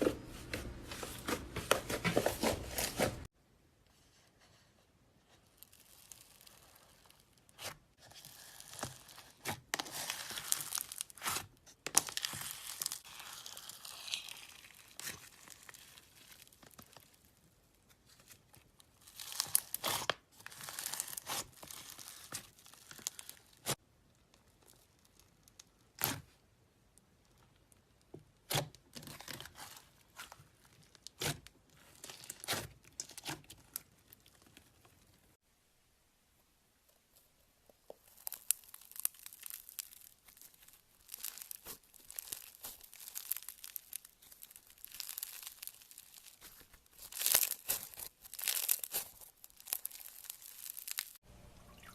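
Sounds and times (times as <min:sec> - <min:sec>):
slime crackling: 0:08.5 - 0:17.3, 0:19.0 - 0:23.8, 0:37.8 - 0:51.2.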